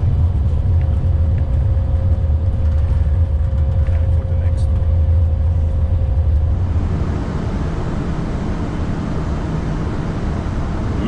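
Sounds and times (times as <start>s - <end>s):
aircraft engine rumble: 0.0s - 11.0s
low hum: 0.0s - 11.0s
airflow: 5.5s - 11.0s.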